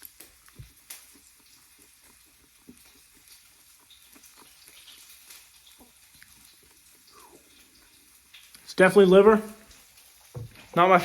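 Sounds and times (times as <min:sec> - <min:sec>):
person chewing: 0:00.0 - 0:08.7
meat sizzling in a pan: 0:00.0 - 0:11.0.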